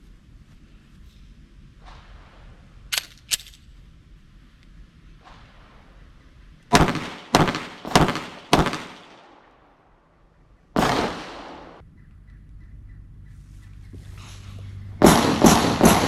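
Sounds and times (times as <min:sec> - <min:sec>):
pistol shots with echo: 0:06.7 - 0:09.5, 0:10.8 - 0:11.8, 0:15.0 - 0:16.0.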